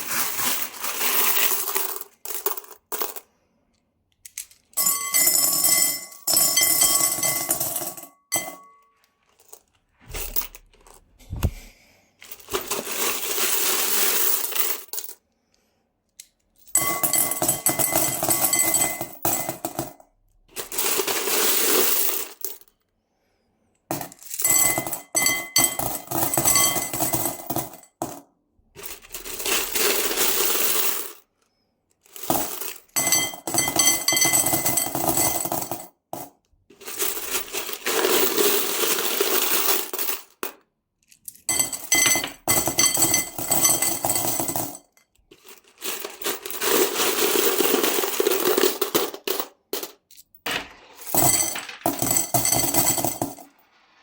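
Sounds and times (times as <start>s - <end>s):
coins pouring and clinking: 0.0s - 3.2s, 4.8s - 11.0s, 12.3s - 15.2s, 20.6s - 22.7s, 23.9s - 28.2s, 28.8s - 31.2s, 32.1s - 40.6s, 41.2s - 54.0s.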